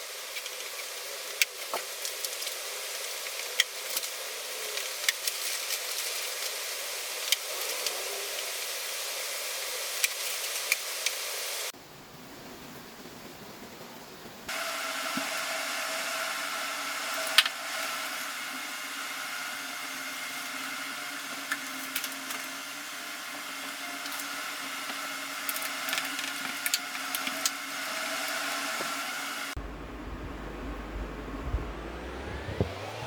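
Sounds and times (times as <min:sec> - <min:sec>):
electric motor and fan whining: 0:14.3 - 0:33.0.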